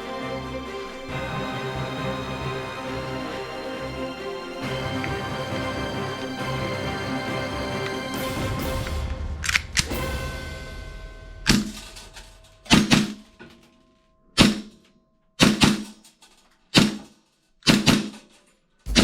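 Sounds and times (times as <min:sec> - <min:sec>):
toy guns popping: 0:12.7 - 0:13.2, 0:16.7 - 0:18.3.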